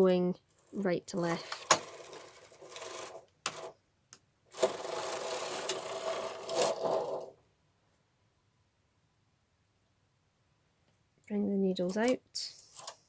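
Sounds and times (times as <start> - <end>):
knitting machine carriage rattling: 1.2 - 3.7, 4.5 - 7.3.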